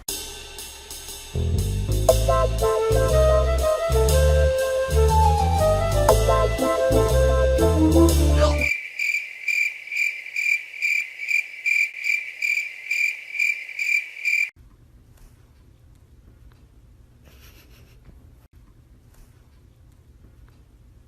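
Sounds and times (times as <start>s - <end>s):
brass music: 1.8s - 8.7s
cricket chirping: 8.6s - 14.5s.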